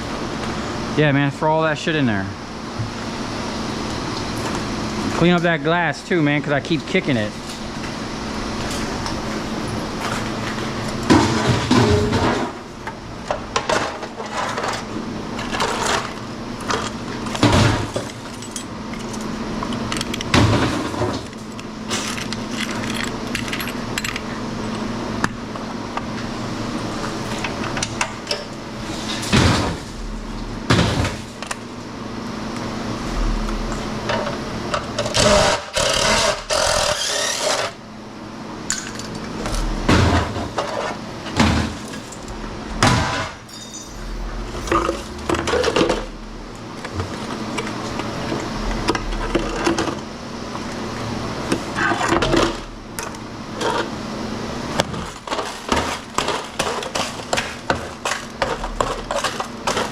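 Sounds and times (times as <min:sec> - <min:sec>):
low hum: 0:26.2 - 0:35.4, 0:37.9 - 0:51.6.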